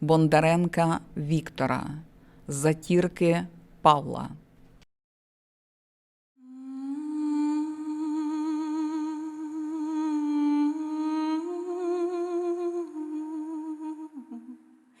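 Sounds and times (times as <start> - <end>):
person humming a mournful melody: 6.4 - 14.8.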